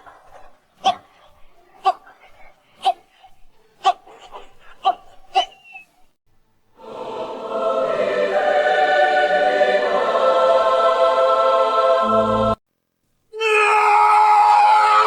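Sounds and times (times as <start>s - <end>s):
choir singing held chord: 6.8s - 12.6s.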